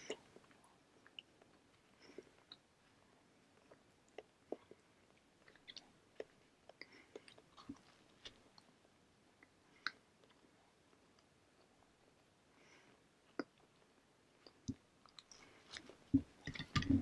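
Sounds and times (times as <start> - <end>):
close-up chewing: 0.0 - 11.7.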